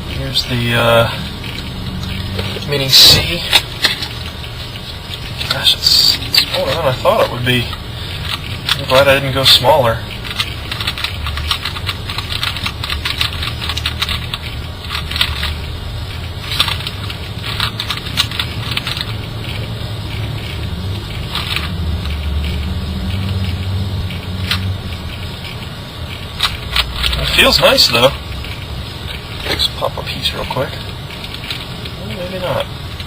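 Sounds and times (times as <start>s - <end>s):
steady low hum: 0.0s - 33.0s
puzzle cube clicking: 5.1s - 27.8s.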